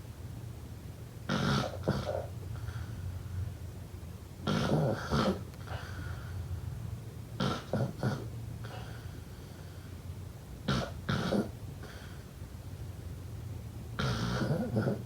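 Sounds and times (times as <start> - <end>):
steady low hum: 0.0 - 15.0
rough snores: 4.5 - 5.4, 14.0 - 15.0.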